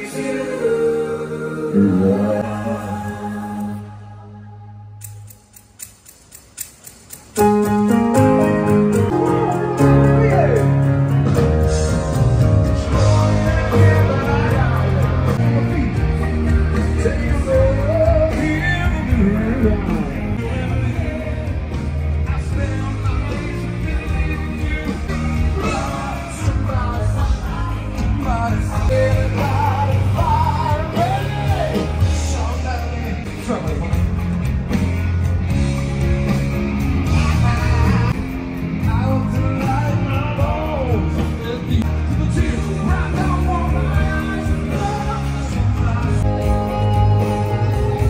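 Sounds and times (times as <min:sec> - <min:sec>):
person singing: 0:00.0 - 0:05.3, 0:07.9 - 0:34.1, 0:37.0 - 0:48.0
bass: 0:00.0 - 0:48.0
drums: 0:05.0 - 0:48.0
electric guitar: 0:07.1 - 0:48.0.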